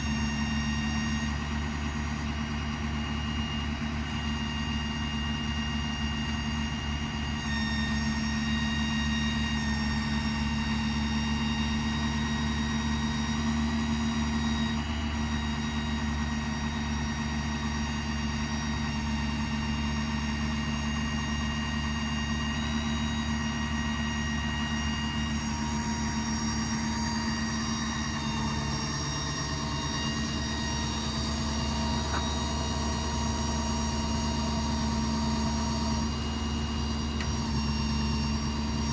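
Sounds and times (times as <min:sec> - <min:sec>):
diesel engine idling: 0:00.0 - 0:38.9
high whining tones: 0:24.8 - 0:38.9.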